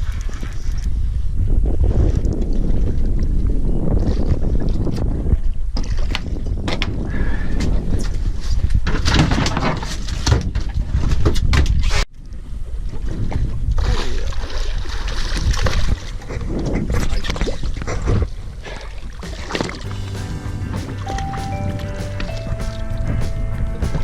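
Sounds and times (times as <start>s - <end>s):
wind on microphone: 0.0s - 24.0s
water sloshing: 14.2s - 23.2s
boat engine rumble: 19.3s - 24.0s.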